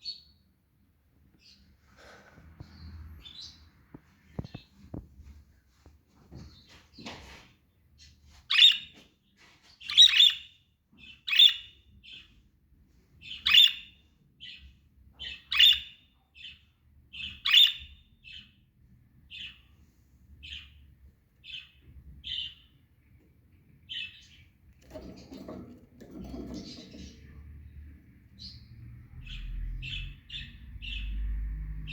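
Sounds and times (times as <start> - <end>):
budgerigars chirping: 8.5 - 8.9, 9.9 - 12.3, 13.2 - 18.6, 21.4 - 22.7.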